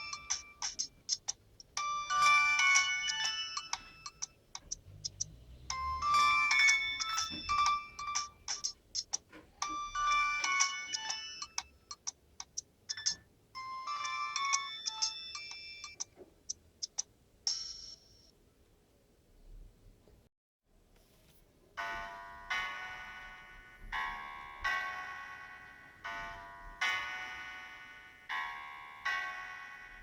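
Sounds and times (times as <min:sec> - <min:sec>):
mobile phone ringtone melody: 0:00.0 - 0:04.7, 0:05.7 - 0:12.1, 0:12.9 - 0:16.1, 0:17.5 - 0:18.3.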